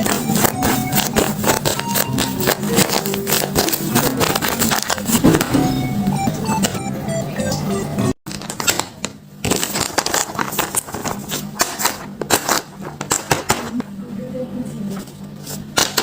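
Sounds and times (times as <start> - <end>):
paper tearing with crackles: 0.0 - 5.4, 8.3 - 13.3
paper crinkling and rustling: 0.0 - 6.8, 8.3 - 13.4.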